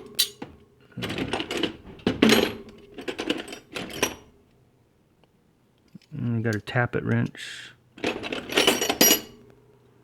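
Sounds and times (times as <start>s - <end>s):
metal wrenches clinking: 0.0s - 4.3s, 8.0s - 9.4s.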